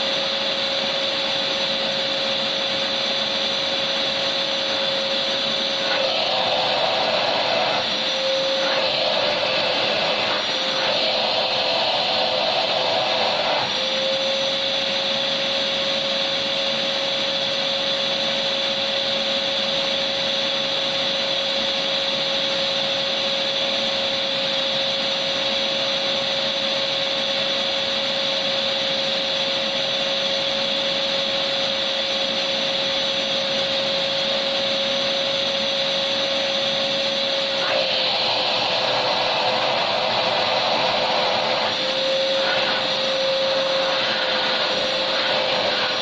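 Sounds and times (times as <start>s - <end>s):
vacuum cleaner motor whining: 0.0s - 46.0s.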